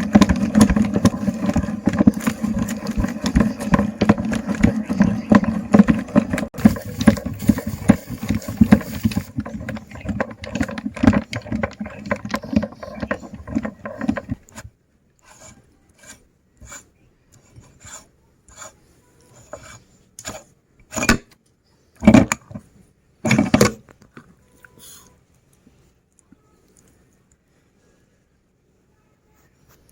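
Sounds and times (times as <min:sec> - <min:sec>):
meat grinder motor hum: 0:00.0 - 0:14.4
grinding and scraping: 0:00.0 - 0:21.1
short knocks and scrapes: 0:00.0 - 0:21.2.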